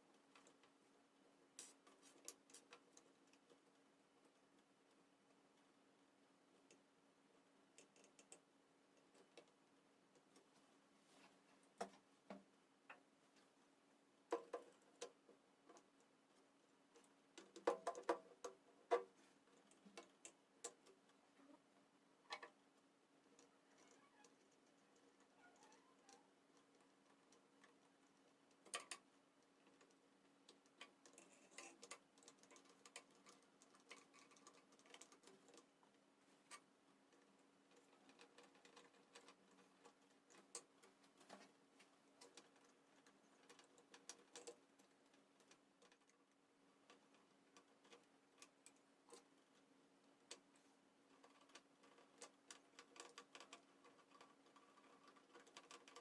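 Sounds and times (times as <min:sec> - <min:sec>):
small hard parts clicking: 0:07.7 - 0:10.5, 0:22.2 - 0:56.0.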